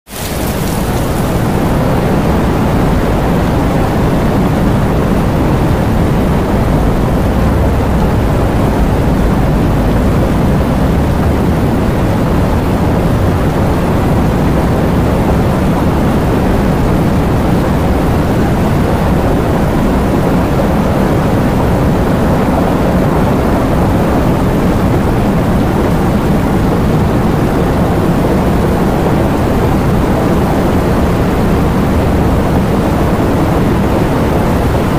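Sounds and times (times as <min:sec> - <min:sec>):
heavy rain falling: 0:00.0 - 0:34.9
deep low rumble: 0:00.3 - 0:24.2.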